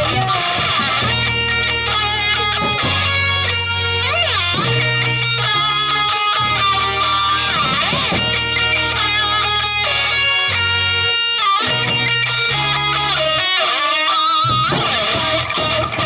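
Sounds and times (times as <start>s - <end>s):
bass line: 0.0s - 13.7s, 14.3s - 16.0s
electric guitar bending notes: 0.0s - 16.0s.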